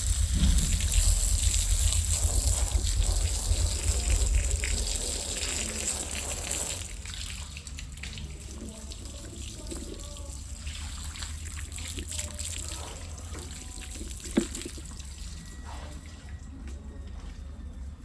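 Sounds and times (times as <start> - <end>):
water running and splashing: 0.0 - 15.2
steady low hum: 0.0 - 18.0.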